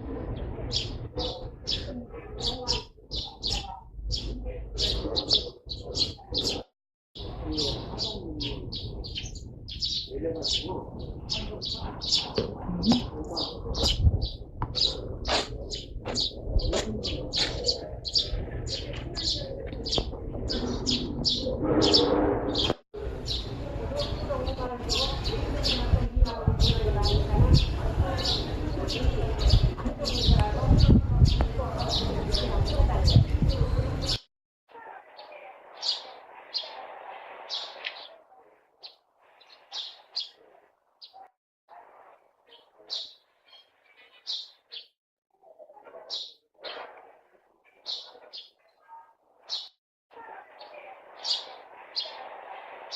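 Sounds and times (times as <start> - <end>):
low background murmur: 0.0 - 39.1
sparrows chirping: 0.1 - 34.2, 34.8 - 41.3, 42.4 - 52.9.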